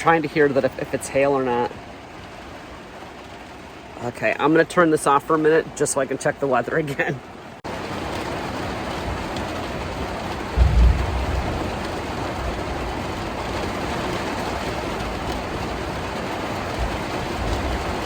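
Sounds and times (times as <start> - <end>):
heavy rain on a vehicle roof: 0.0 - 18.0
low rumble of thunder: 10.0 - 14.1.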